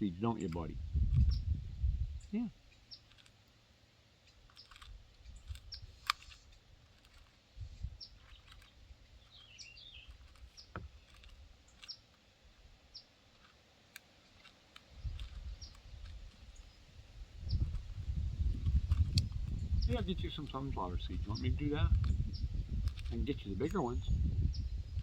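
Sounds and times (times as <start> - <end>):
small birds chirping: 0.0 - 25.0
low rumbles: 14.9 - 25.0.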